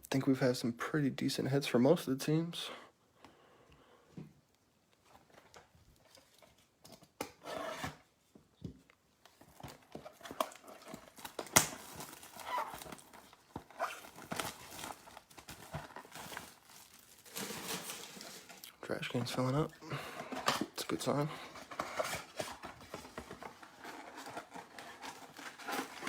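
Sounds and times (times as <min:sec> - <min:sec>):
card pack wrappers tearing: 0:10.0 - 0:19.7, 0:20.5 - 0:26.0.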